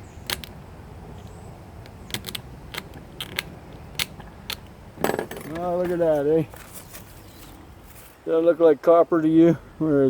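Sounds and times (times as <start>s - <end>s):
clicks of hand tools and metal: 2.1s - 6.0s.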